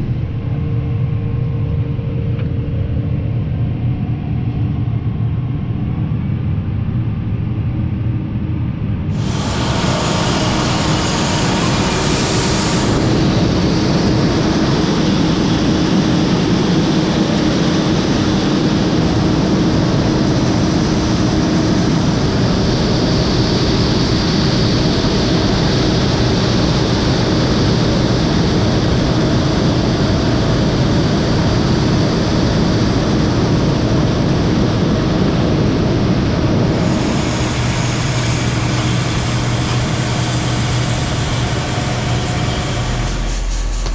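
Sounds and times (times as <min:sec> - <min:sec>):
heavy harvest machinery running: 0:09.1 - 0:43.9.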